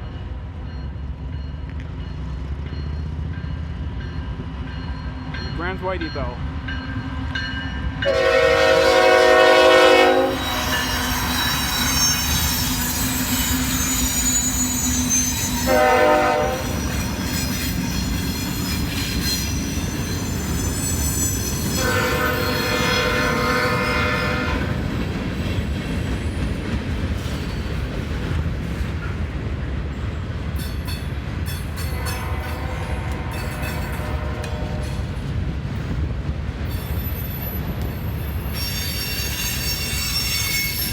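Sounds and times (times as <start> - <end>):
rumble of passing train cars: 0.0 - 40.9
train air horn blasts: 8.0 - 11.3, 15.6 - 17.0, 21.7 - 24.8, 32.0 - 35.1
high-pitched wheel squeal: 10.0 - 24.8, 36.8 - 40.9.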